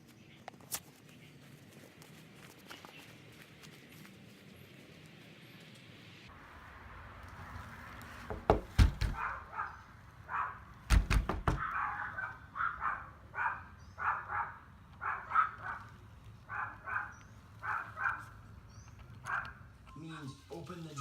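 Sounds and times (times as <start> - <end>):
door banging open: 8.3 - 9.3, 10.9 - 11.8
small dogs yapping: 9.1 - 10.7, 11.5 - 18.5, 19.2 - 19.7.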